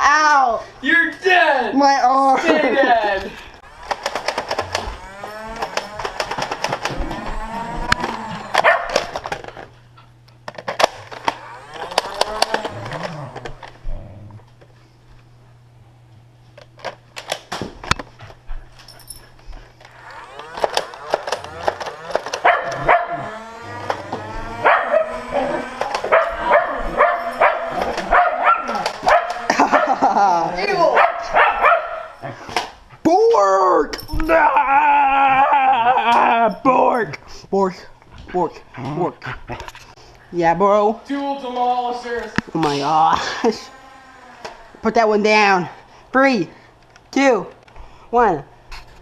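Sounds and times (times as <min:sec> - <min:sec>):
dog barking: 0:08.6 - 0:09.0, 0:22.4 - 0:23.3, 0:24.6 - 0:25.5, 0:26.1 - 0:30.0, 0:31.0 - 0:32.2
dog whining: 0:19.9 - 0:30.2
person making wavering vocal noises: 0:34.2 - 0:36.8.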